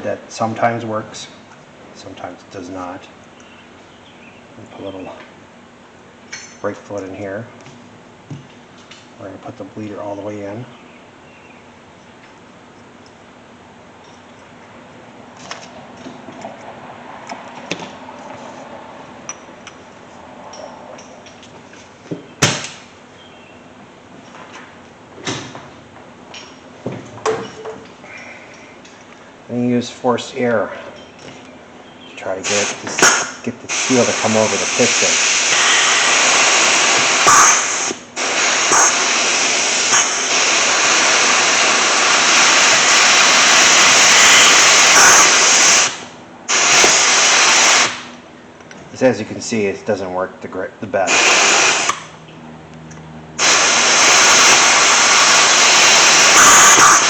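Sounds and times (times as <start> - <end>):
compressed air hissing: 32.4 - 48.1, 51.1 - 52.2, 53.4 - 57.0.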